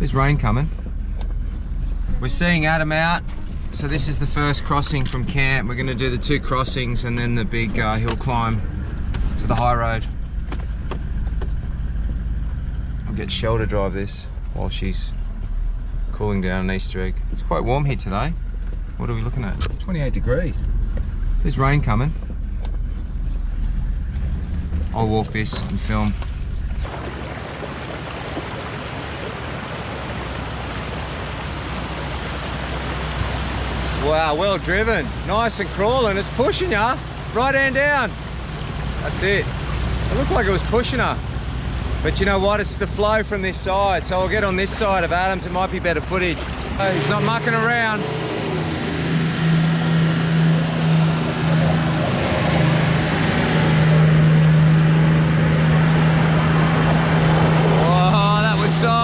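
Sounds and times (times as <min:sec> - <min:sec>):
engine rumbling: 0:00.0 - 0:59.0
river water rushing: 0:25.7 - 0:59.0.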